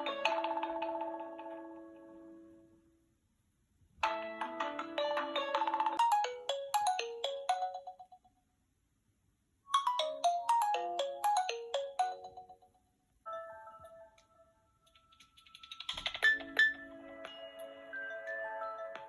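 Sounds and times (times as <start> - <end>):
phone ringtone melody: 0.0 - 1.8, 4.0 - 8.2, 9.7 - 12.7, 13.3 - 19.0.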